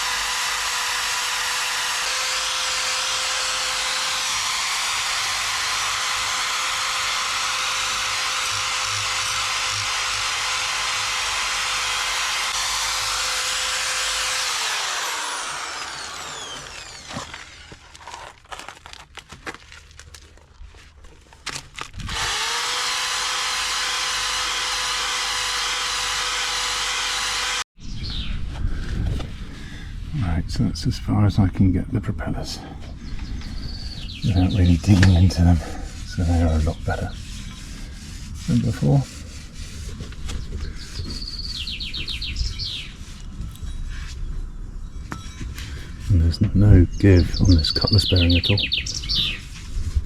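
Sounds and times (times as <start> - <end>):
power tool scrubbing metal: 0.0 - 18.0, 22.1 - 27.7, 34.3 - 40.0.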